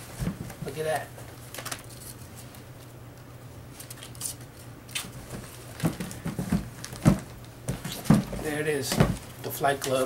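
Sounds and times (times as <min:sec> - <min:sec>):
steady low hum: 0:00.0 - 0:10.0
sneakers clicking and rustling: 0:05.2 - 0:10.0.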